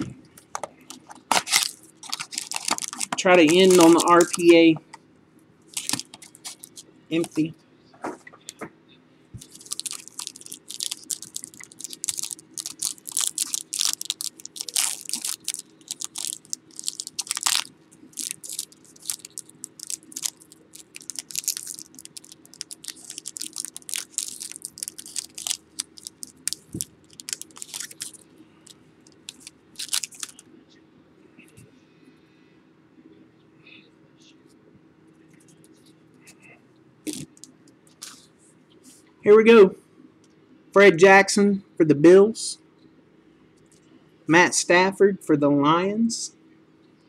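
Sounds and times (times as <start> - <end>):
faint steady hum: 0.0 - 47.0
foil wrappers crinkling and tearing: 0.9 - 4.7, 5.7 - 7.4, 9.4 - 30.4.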